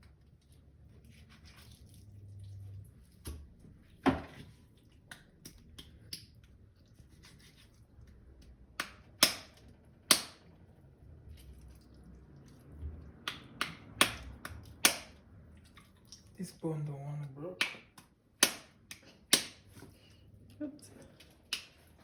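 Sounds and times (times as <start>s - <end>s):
knife chopping chicken bone: 8.7s - 10.5s, 13.2s - 15.2s, 17.6s - 19.9s.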